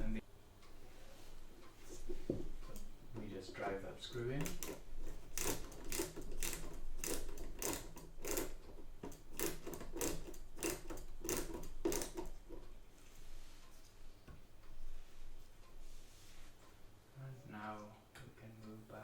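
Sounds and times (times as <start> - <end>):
screwdriver scraping strokes: 4.4 - 8.6, 9.4 - 12.3.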